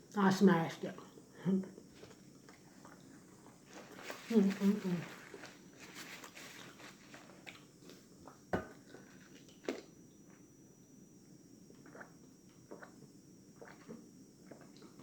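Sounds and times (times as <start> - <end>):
chewing and lip smacking: 1.8 - 4.1, 6.2 - 9.9.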